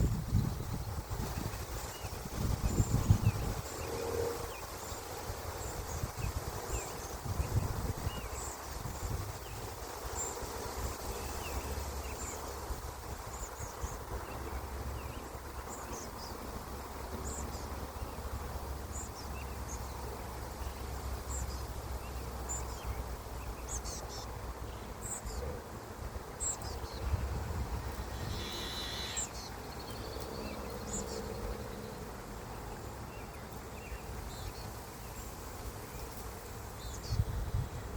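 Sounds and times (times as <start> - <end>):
wind buffeting microphone: 0.0 - 3.9, 5.8 - 9.8, 26.8 - 29.3, 37.0 - 37.9
high chirps: 27.9 - 30.0.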